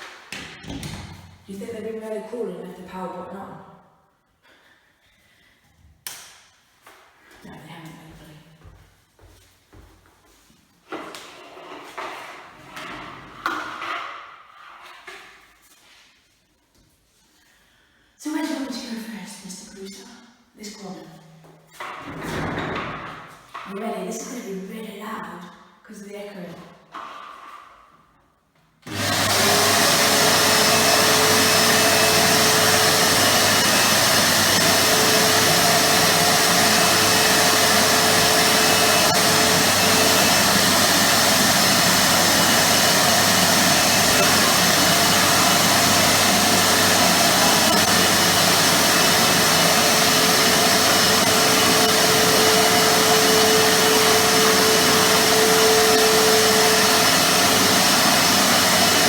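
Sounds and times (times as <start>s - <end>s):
vacuum cleaner whining: 28.8s - 59.0s.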